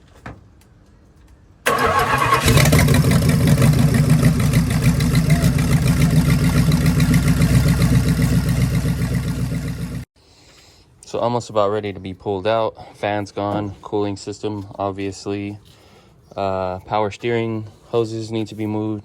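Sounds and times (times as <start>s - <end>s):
car engine starting and running: 1.7s - 10.1s.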